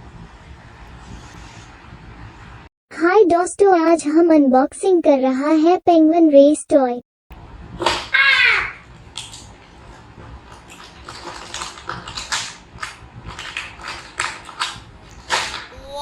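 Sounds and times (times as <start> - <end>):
packaging clicks and crinkles: 10.6 - 15.6.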